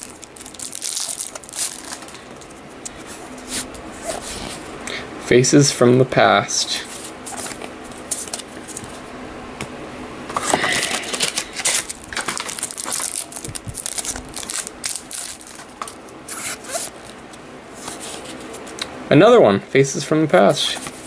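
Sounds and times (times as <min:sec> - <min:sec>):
trading cards sliding and scraping: 0:01.6 - 0:04.7, 0:06.8 - 0:09.0, 0:16.3 - 0:18.8.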